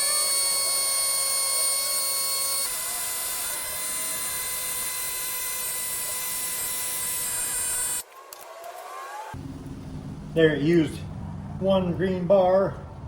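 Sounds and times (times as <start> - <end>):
air compressor whining: 0.0 - 8.0.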